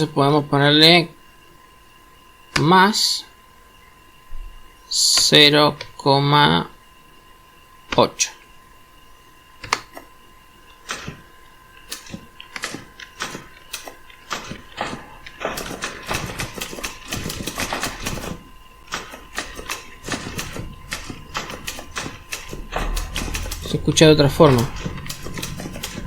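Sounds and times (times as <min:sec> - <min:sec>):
typewriter keys clacking: 0:11.9 - 0:26.0.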